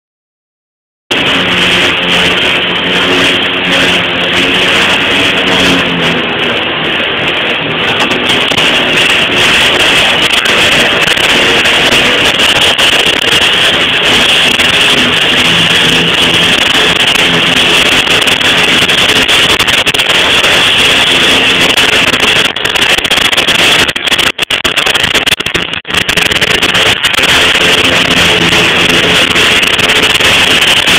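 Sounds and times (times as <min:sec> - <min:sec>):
welding arc hissing: 0:07.9 - 0:30.9.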